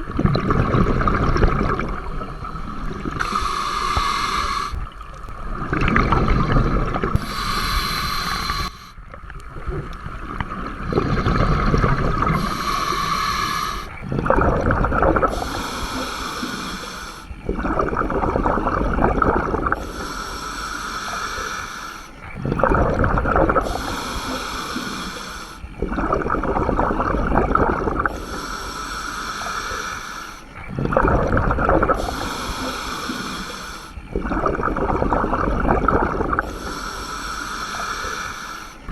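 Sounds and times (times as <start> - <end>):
gurgling rush of bubbles: 0.0 - 38.9
hissing regulator inhalation: 0.4 - 9.0, 10.8 - 17.4, 18.4 - 22.4, 23.3 - 26.9, 27.8 - 38.9.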